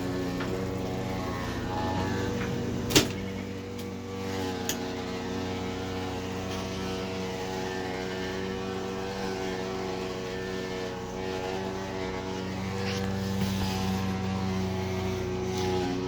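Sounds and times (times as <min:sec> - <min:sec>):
washing machine humming: 0:00.0 - 0:16.0.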